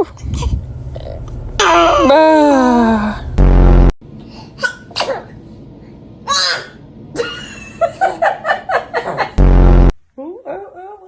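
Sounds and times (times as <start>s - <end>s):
loud deep burst: 0.0s - 3.9s, 9.4s - 9.9s
baby sneezing: 4.2s - 5.4s, 6.3s - 6.8s.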